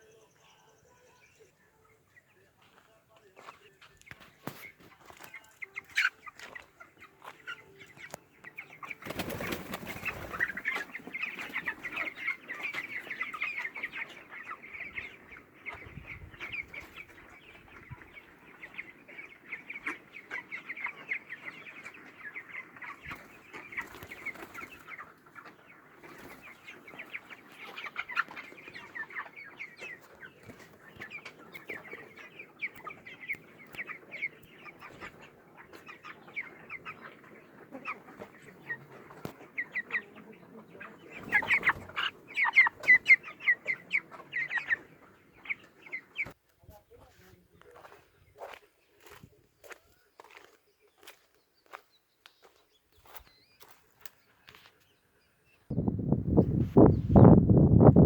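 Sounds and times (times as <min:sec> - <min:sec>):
chickens clucking and cheeping: 0:00.0 - 0:58.0
wing flapping: 0:09.0 - 0:10.6.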